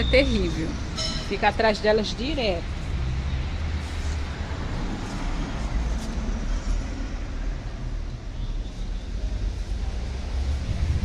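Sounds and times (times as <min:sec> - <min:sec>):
steady low rumbling: 0:09.2 - 0:11.0.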